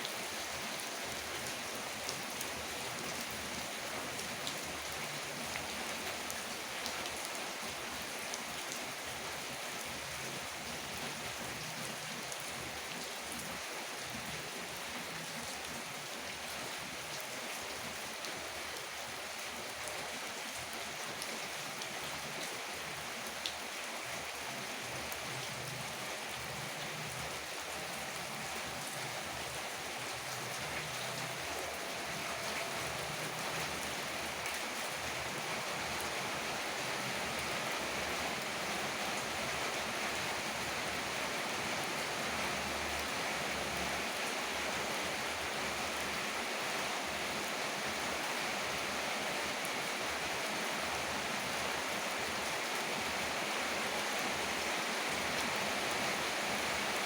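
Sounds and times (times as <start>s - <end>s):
heavy rain hiss: 0.0s - 57.0s.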